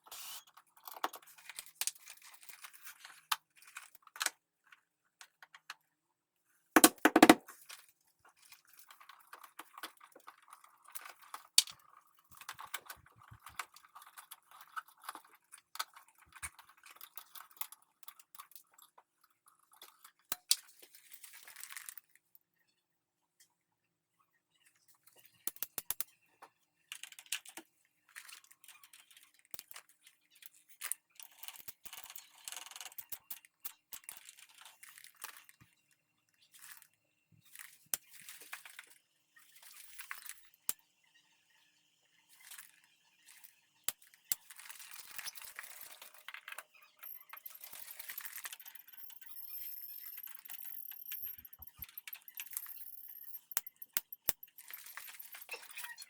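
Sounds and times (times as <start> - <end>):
tool clicks and clinks: 6.8 - 7.4, 47.0 - 55.9.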